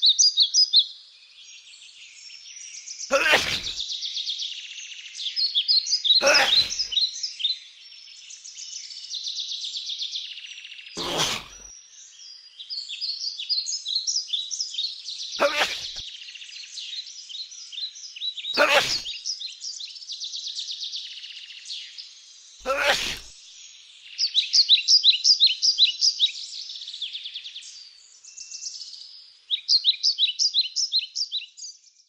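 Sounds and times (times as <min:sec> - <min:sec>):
bird sneezing: 0:03.1 - 0:03.8, 0:06.2 - 0:06.8, 0:11.0 - 0:11.7, 0:15.4 - 0:16.0, 0:18.6 - 0:19.1, 0:22.6 - 0:23.3.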